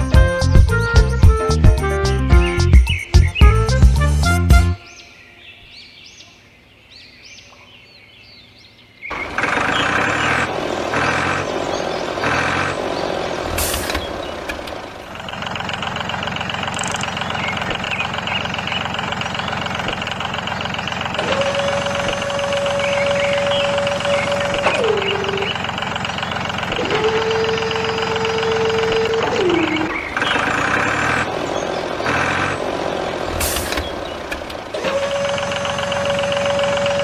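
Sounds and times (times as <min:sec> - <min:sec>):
vehicle engine starting and running: 0:09.1 - 0:37.0
faint chirps: 0:15.2 - 0:31.0
steady beep-like tone: 0:26.8 - 0:30.1.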